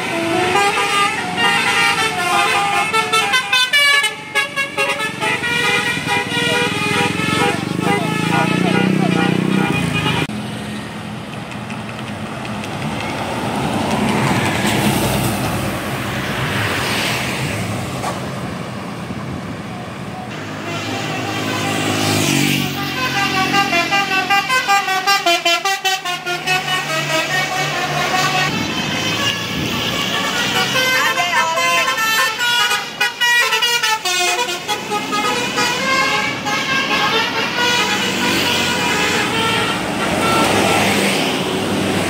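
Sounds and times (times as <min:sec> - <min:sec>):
musical bus horn playing a tune: 0:00.0 - 0:10.3, 0:20.3 - 0:41.0
bus and traffic noise: 0:00.0 - 0:42.0.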